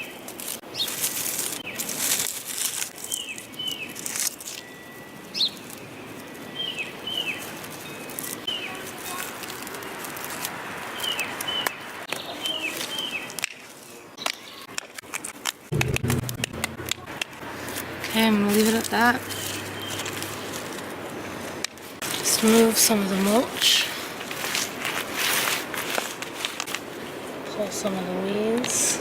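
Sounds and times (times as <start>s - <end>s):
bird chirping: 15.7s - 21.6s.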